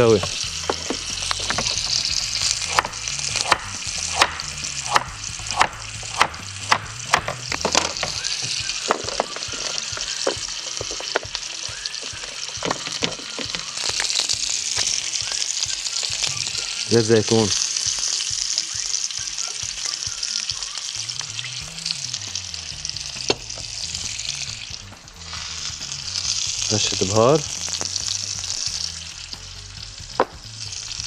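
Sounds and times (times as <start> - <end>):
carrots sizzling on a grill pan: 0.0 - 31.0
sharp clicks and taps: 0.2 - 11.4.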